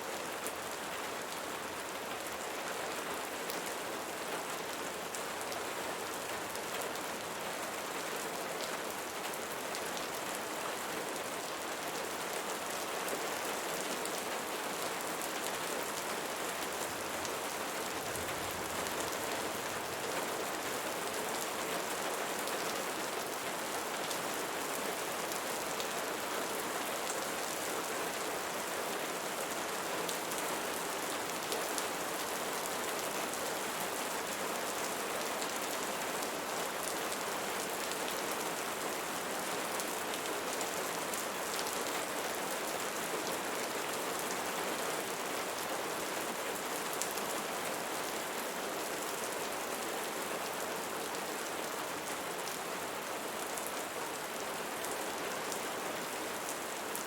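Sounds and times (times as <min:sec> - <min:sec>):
rain pattering: 0:15.0 - 0:22.1.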